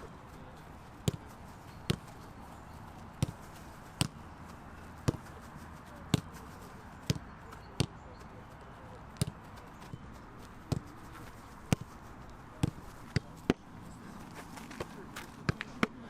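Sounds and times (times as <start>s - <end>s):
boot kicking football thuds: 1.9s - 2.2s, 3.2s - 4.2s, 9.1s - 10.0s, 10.6s - 12.0s, 12.6s - 16.0s.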